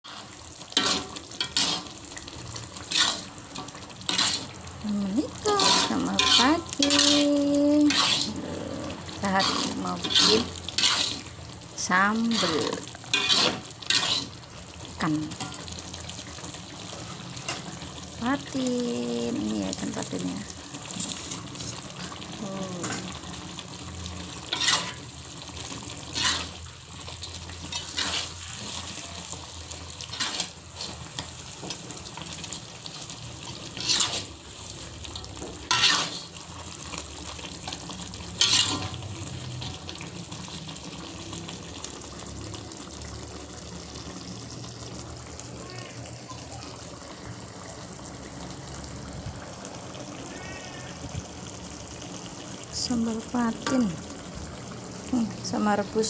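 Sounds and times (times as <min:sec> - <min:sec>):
sharp splashing or scraping: 0:00.0 - 0:02.0, 0:02.9 - 0:04.6, 0:05.5 - 0:08.4, 0:09.3 - 0:11.3, 0:12.2 - 0:14.3, 0:27.7 - 0:29.0, 0:33.7 - 0:34.8.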